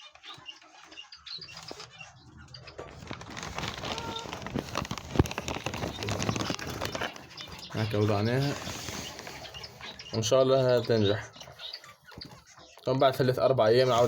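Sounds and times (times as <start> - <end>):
rustling of nesting material: 2.8 - 12.7, 13.8 - 14.0.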